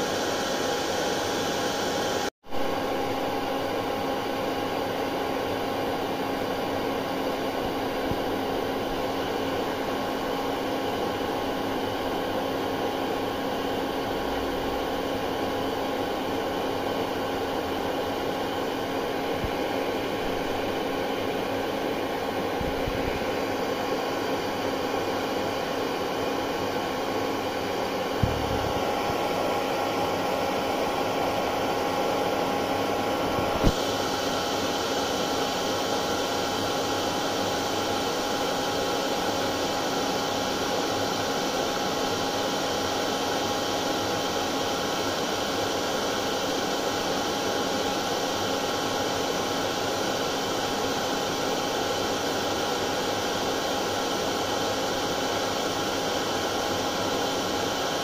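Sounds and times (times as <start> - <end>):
hair dryer running: 0.0 - 58.0.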